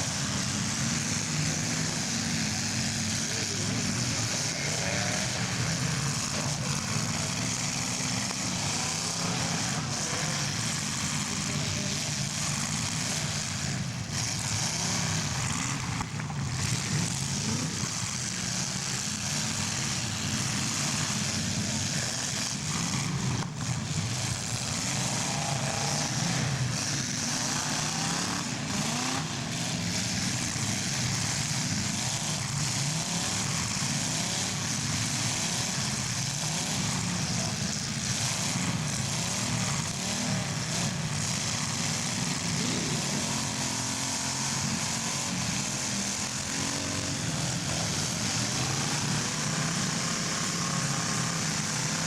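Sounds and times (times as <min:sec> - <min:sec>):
car engines revving: 0:00.0 - 0:52.0.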